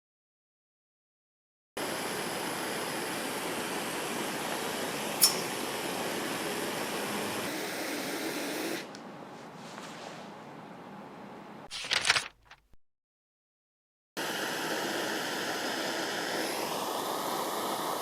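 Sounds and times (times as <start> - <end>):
torch flame hissing: 1.8 - 8.9, 14.2 - 18.0
sharp click: 5.2 - 5.5.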